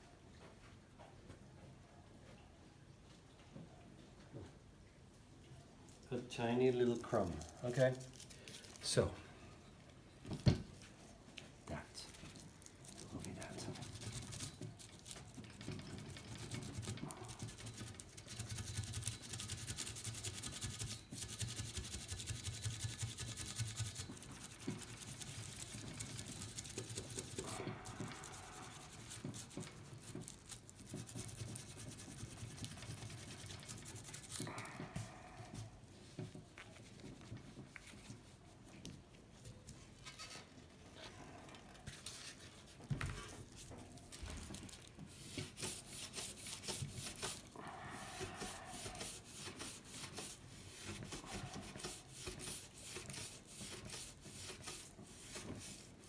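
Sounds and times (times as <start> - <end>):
foil scrubbing on metal: 11.8 - 34.7, 42.0 - 56.0.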